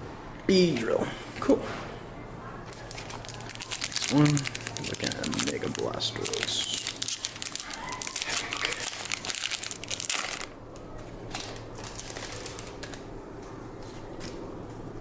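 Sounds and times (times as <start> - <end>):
foil wrapper crinkling and tearing: 2.7 - 10.6, 11.3 - 13.0.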